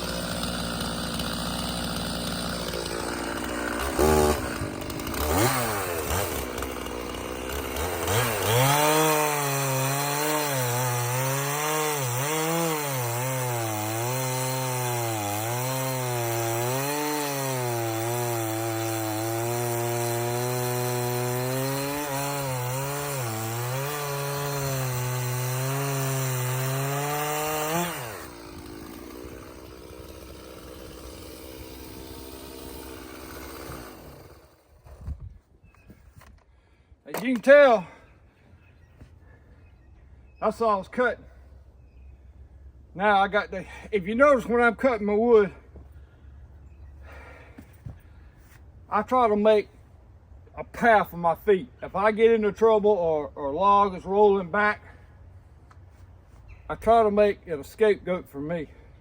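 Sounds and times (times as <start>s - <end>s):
chainsaw revving and cutting log: 0.0s - 35.2s.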